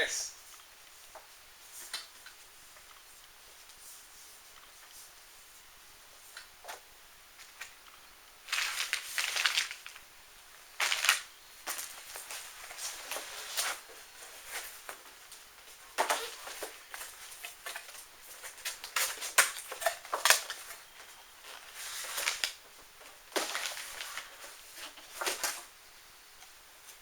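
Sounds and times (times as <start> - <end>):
packaging rustling and crinkling: 8.4 - 25.8.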